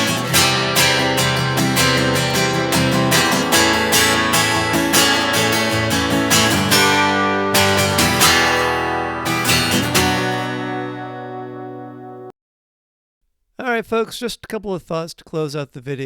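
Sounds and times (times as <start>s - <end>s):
acoustic guitar strumming: 0.0s - 12.3s.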